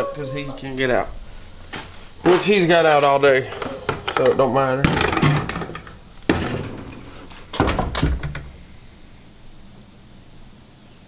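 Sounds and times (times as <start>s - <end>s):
box knocking and rattling: 1.6s - 8.9s.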